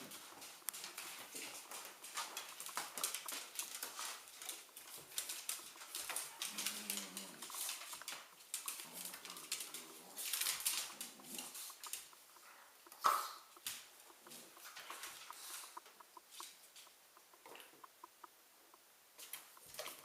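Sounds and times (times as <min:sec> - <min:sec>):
dog play growls: 0:06.2 - 0:07.8.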